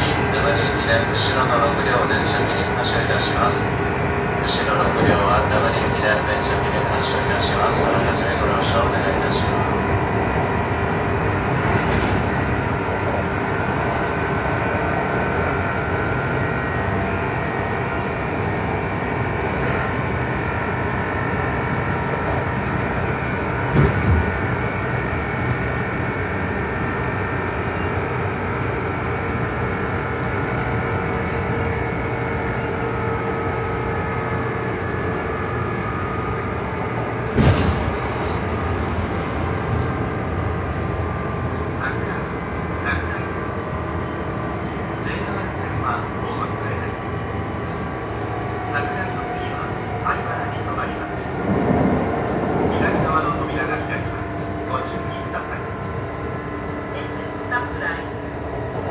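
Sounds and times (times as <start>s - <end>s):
train motors humming: 0.0s - 58.9s.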